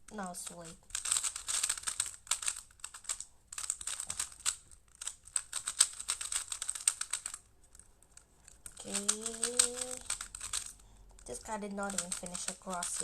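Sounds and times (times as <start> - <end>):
plastic puzzle cube clicking: 0.1 - 13.0.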